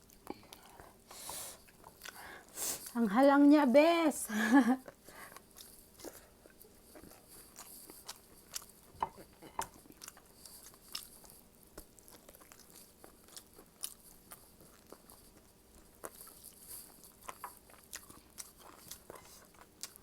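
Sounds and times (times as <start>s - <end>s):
person chewing: 0.0s - 3.0s, 4.8s - 20.0s.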